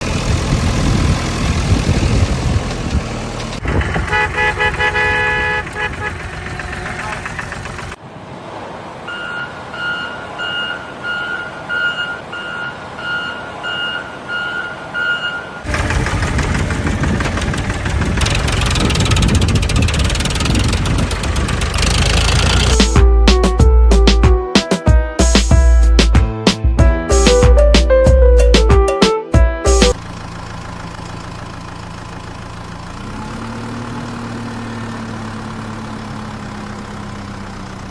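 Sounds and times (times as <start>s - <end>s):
truck engine running: 0.0s - 8.0s, 15.6s - 37.9s
truck horn toots: 3.7s - 8.0s
reversing alarm beeping: 9.1s - 15.7s.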